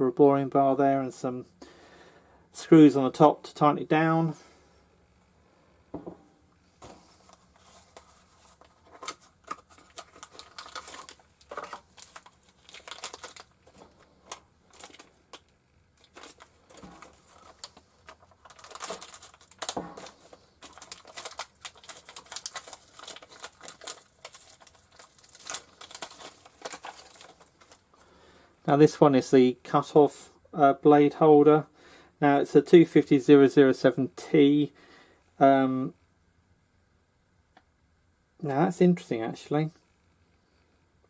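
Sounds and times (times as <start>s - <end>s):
packaging crinkling and tearing: 7.2s - 28.1s.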